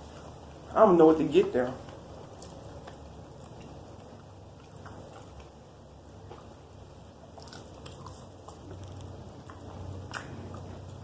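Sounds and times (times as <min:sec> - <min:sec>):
chewing and crunching: 0:01.8 - 0:05.6, 0:07.2 - 0:11.0.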